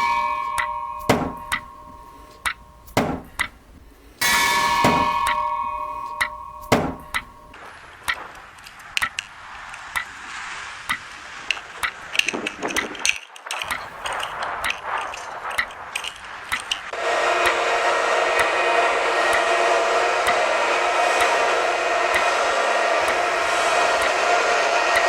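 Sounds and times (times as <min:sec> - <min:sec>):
faint hiss: 0:00.0 - 0:25.0
whirring hair-dryer-like noise: 0:17.0 - 0:25.0.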